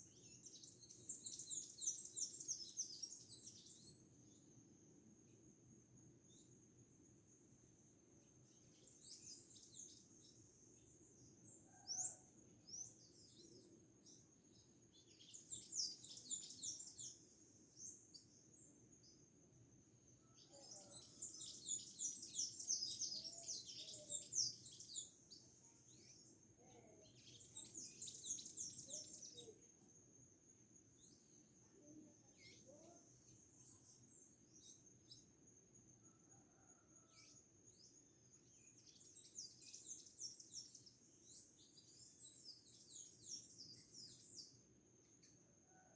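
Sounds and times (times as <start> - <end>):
small birds twittering: 0.0 - 4.1, 8.5 - 19.0, 20.2 - 29.7, 31.0 - 35.3, 38.6 - 44.6.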